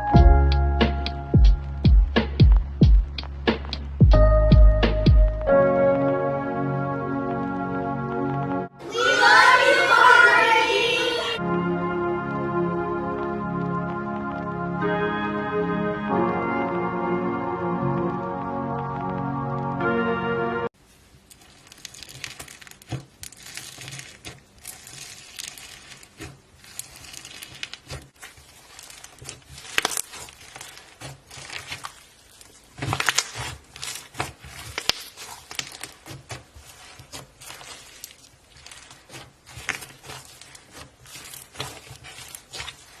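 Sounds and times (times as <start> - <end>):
slime bubbles crackling and popping: 12.9 - 14.6, 20.8 - 43.0.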